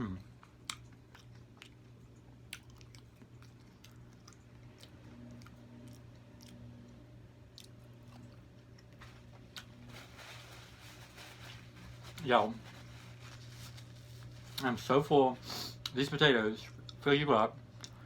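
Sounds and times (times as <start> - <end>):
chewing soft food: 0.0 - 9.9, 17.7 - 18.0.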